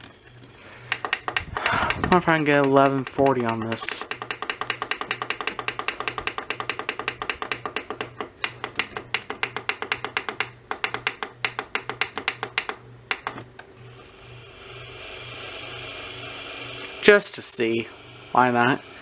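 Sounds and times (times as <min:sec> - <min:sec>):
low pulsing hum: 0:00.0 - 0:04.6, 0:12.4 - 0:19.0
rapid radio tuning clicks: 0:00.9 - 0:09.6
radio static hiss: 0:14.1 - 0:19.0.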